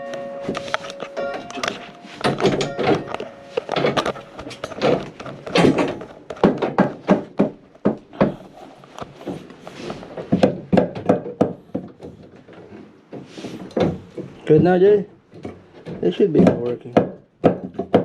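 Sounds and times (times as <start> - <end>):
knocks and thunks on plumbing: 2.2 - 8.5, 10.1 - 18.0.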